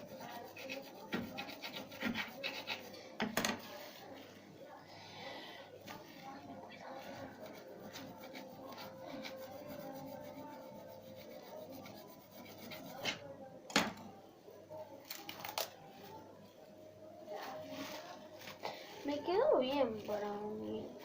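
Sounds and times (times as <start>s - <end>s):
rubbing and scraping handling: 0.0s - 4.3s.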